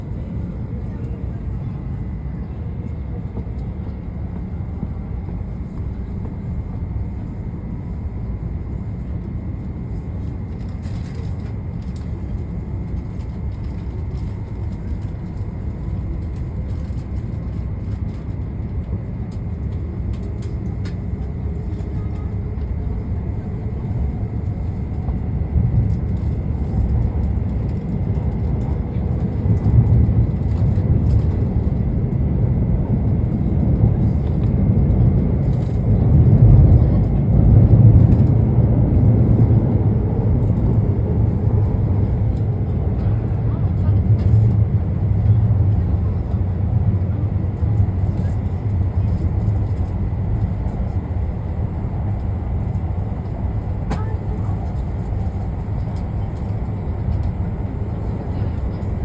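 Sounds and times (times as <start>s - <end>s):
train cabin rumble: 0.0s - 59.0s.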